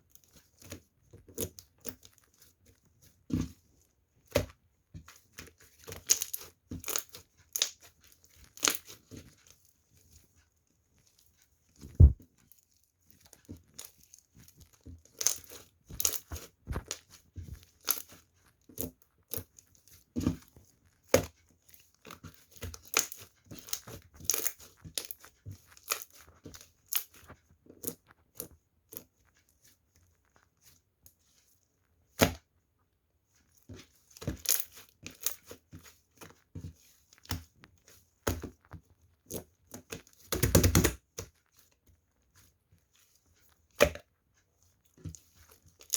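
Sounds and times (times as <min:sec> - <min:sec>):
slime squished by hand: 0:05.8 - 0:09.3, 0:11.8 - 0:12.2, 0:13.2 - 0:29.0, 0:34.2 - 0:35.9.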